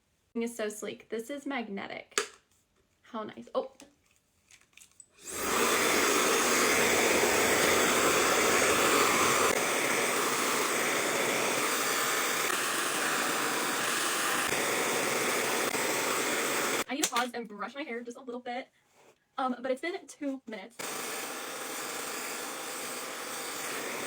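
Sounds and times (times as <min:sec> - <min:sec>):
hair dryer blowing: 0:05.2 - 0:16.9, 0:20.8 - 0:24.0.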